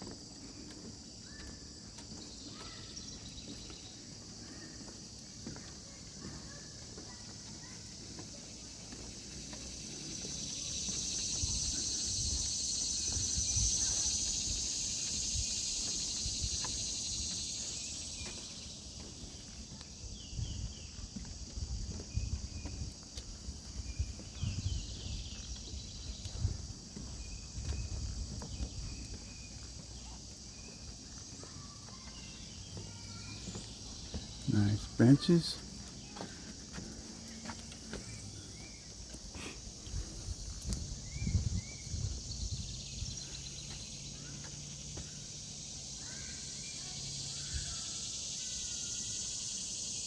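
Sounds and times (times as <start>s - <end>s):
footsteps on trail: 0.0s - 46.3s
faint insect chirps: 0.0s - 50.0s
cicada buzzing: 8.1s - 19.4s, 23.4s - 50.0s.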